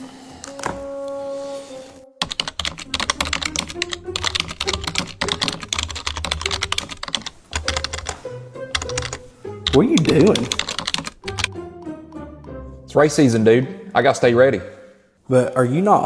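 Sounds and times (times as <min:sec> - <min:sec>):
rapid dense clicking: 0:02.2 - 0:08.2, 0:08.8 - 0:11.6.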